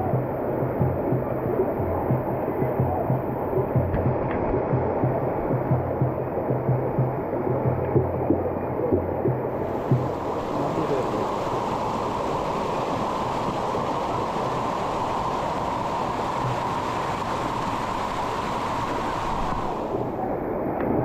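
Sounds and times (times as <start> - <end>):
waterfall rushing: 9.5 - 20.6.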